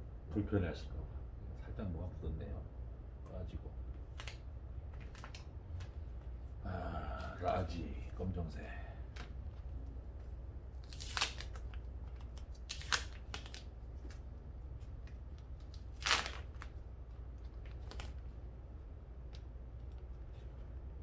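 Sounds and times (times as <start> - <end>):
plastic bags crinkling: 10.8 - 14.2, 15.0 - 16.8, 17.4 - 18.4.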